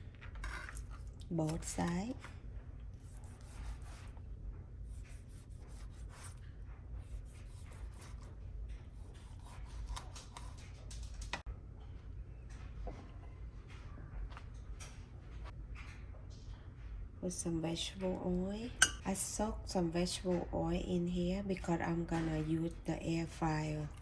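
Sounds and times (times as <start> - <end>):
low steady hum: 0.0 - 24.0
knife scraping and cutting fish: 3.0 - 4.2, 7.1 - 10.8.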